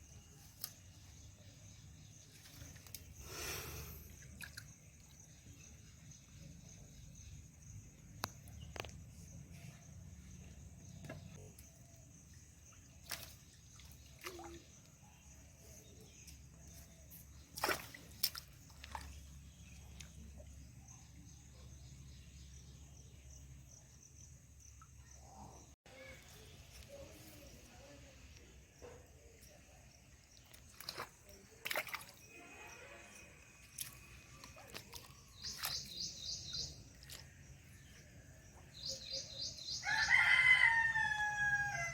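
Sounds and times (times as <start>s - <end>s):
water sloshing and splashing: 10.8s - 20.6s, 30.0s - 38.1s
sharp splashes and clicks: 13.0s - 15.0s, 17.4s - 20.2s, 30.3s - 32.3s, 33.6s - 37.4s.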